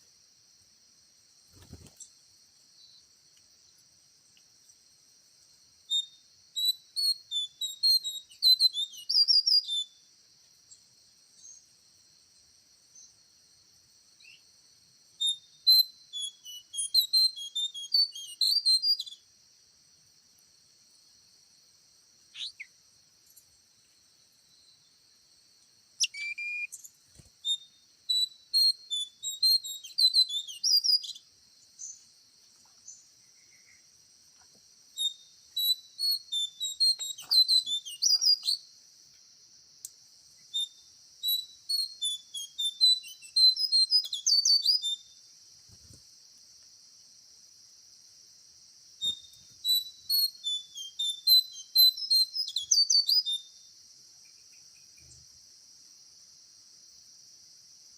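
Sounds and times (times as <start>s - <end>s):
high insect drone: 0.0s - 57.9s
songbird chirping and whistling: 5.9s - 10.1s, 14.2s - 14.4s, 15.2s - 19.3s, 22.3s - 22.8s, 26.0s - 32.1s, 35.0s - 38.7s, 40.4s - 45.2s, 49.0s - 53.7s.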